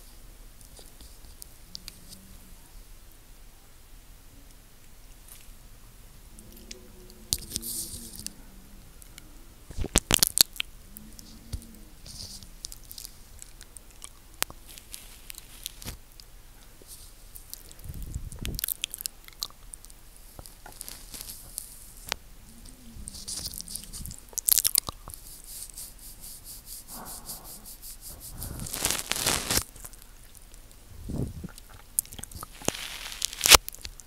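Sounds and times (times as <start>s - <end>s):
licking and lip smacking: 17.3s - 25.9s, 31.4s - 32.7s
sharp mouth clicks: 17.4s - 19.9s.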